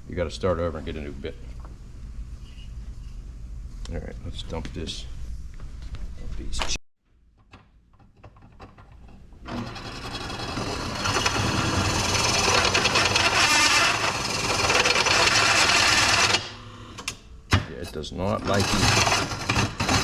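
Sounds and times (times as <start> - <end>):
power drill boring through steel: 9.5 - 16.5, 18.6 - 20.0.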